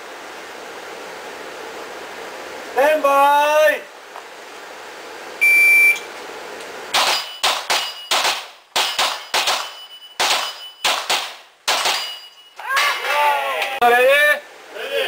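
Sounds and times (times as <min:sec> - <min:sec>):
shot timer beep: 0:05.4 - 0:06.1, 0:09.6 - 0:11.0
steel targets ringing: 0:06.9 - 0:13.0
rapid gunshots: 0:07.0 - 0:12.1.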